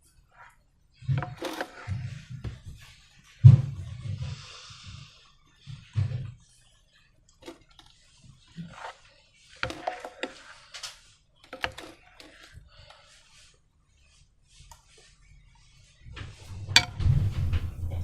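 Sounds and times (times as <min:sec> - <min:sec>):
dull thumps: 0:16.3 - 0:18.0.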